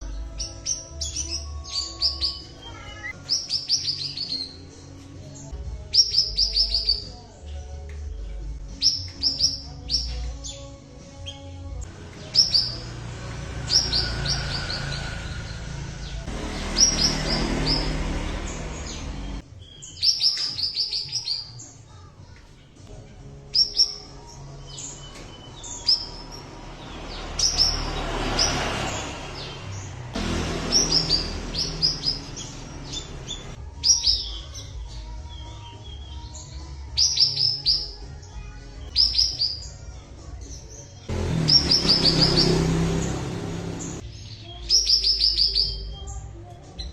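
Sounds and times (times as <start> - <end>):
songbird singing high falling notes: 0.0 - 21.6, 23.5 - 38.1, 38.8 - 39.8, 40.9 - 46.2
rushing background noise: 11.9 - 19.5.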